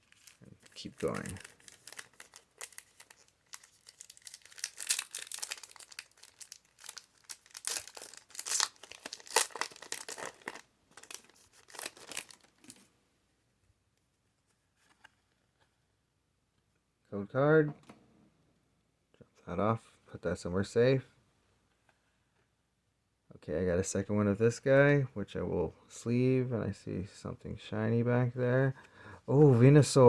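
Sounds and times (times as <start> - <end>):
foil wrapper tearing and crinkling: 0.0 - 12.8.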